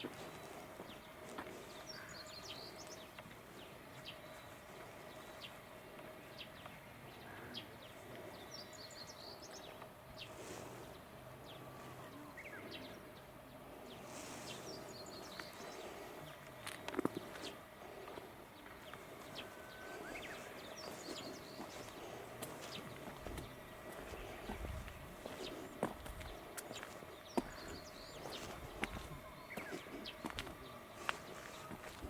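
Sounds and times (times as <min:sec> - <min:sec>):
outdoor background hum: 0:00.0 - 0:32.0
small birds chirping: 0:00.0 - 0:32.0.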